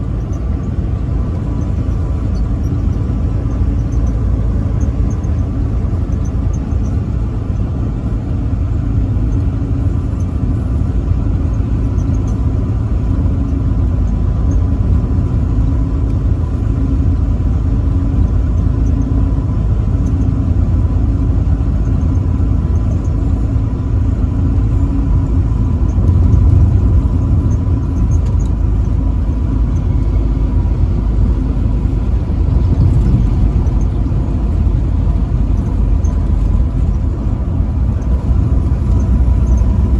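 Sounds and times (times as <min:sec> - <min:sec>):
thin steady whine: 0:00.0 - 0:39.9
truck engine and road rumble: 0:00.0 - 0:39.9.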